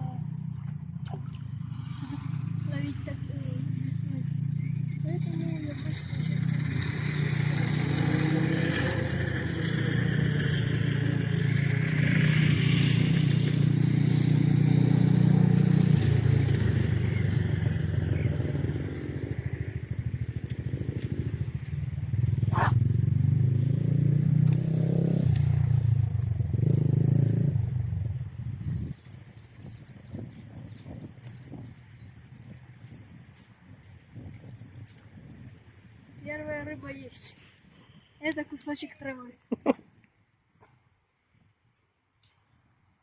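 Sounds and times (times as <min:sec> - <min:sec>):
wind buffeting microphone: 0:25.9 - 0:39.0.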